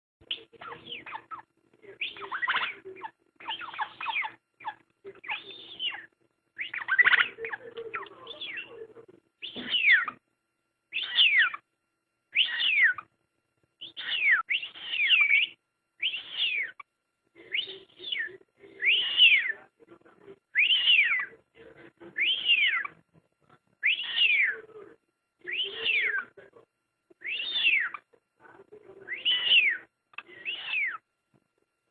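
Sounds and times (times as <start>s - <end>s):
parrot whistling: 2.0s - 8.7s, 9.4s - 10.2s, 10.9s - 11.6s, 12.3s - 13.1s, 13.8s - 16.8s, 17.5s - 19.6s, 20.5s - 21.3s, 22.2s - 22.9s, 23.8s - 24.7s, 25.5s - 26.3s, 27.2s - 28.0s, 29.1s - 31.0s
parrot chattering notes: 2.0s - 8.8s, 9.4s - 10.2s, 10.9s - 11.6s, 12.3s - 13.0s, 13.8s - 16.8s, 17.6s - 19.5s, 20.6s - 21.3s, 23.8s - 24.6s, 25.5s - 26.3s, 27.3s - 28.0s, 29.1s - 31.0s.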